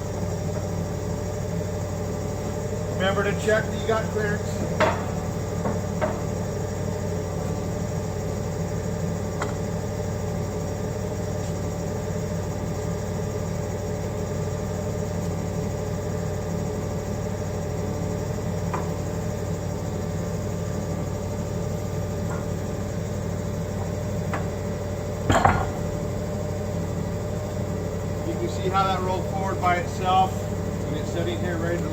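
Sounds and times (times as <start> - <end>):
forklift humming: 0.0 - 31.9
heavy fork clunk: 25.3 - 25.9.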